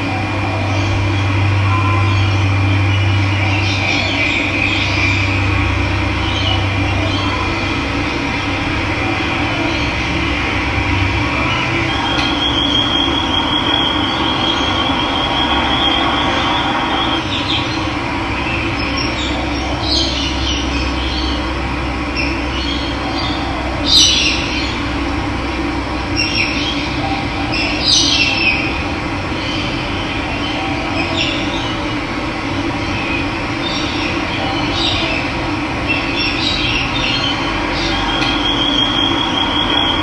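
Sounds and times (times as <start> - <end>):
birds chirping: 0.0 - 25.1, 26.0 - 40.0
bird trilling: 11.3 - 17.8, 36.2 - 40.0.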